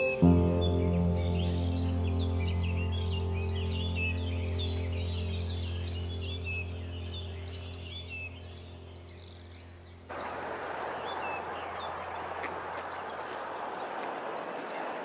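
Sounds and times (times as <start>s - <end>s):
low steady drone: 0.0s - 10.1s
small birds chirping: 0.0s - 15.0s
flowing water rushing: 10.1s - 15.0s.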